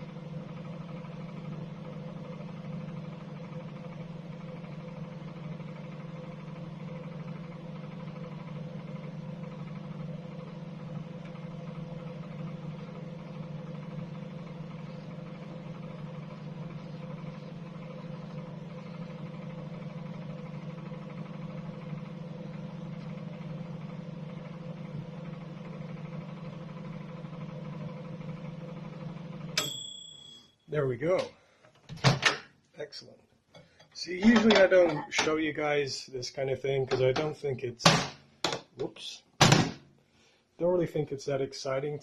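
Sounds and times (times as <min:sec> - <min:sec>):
microwave oven humming: 0:00.0 - 0:32.6, 0:33.6 - 0:35.9.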